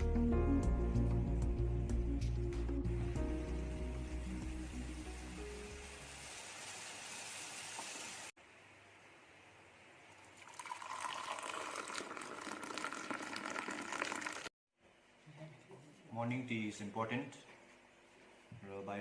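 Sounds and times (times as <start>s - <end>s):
steady hiss: 2.9s - 10.0s
tea pouring into a cup: 10.2s - 14.5s.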